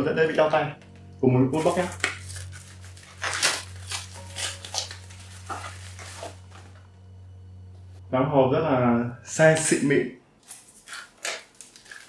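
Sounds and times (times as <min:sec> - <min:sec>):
packaging crinkling and rustling: 0:01.6 - 0:06.8, 0:10.4 - 0:12.0.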